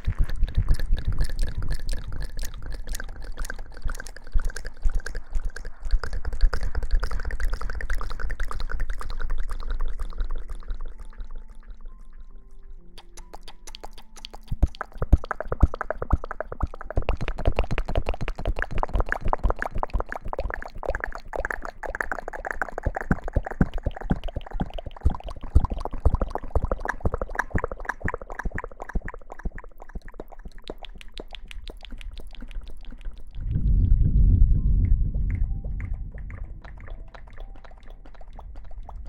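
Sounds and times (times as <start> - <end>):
wet hair lathering: 0.0 - 11.6, 13.0 - 33.5
deep rushing sound: 33.5 - 37.6.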